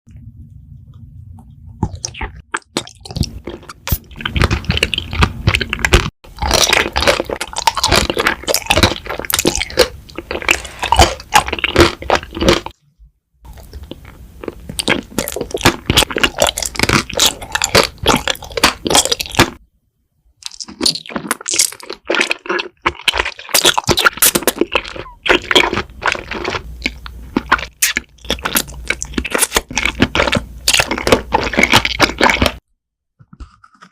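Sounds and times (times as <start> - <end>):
person chewing crunchy food: 1.5 - 12.8, 13.4 - 19.6, 20.4 - 32.6, 33.2 - 33.9.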